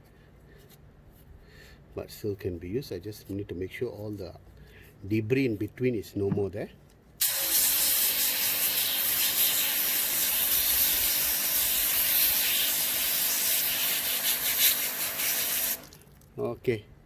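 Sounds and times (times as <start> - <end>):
power washer spraying water: 7.2 - 16.1.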